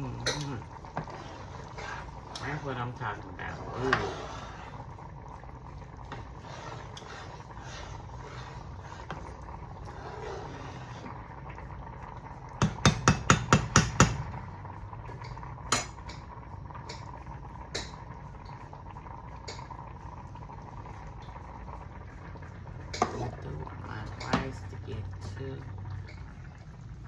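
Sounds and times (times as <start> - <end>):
metal utensil tapping a pot: 0.2 - 0.6, 12.6 - 14.3.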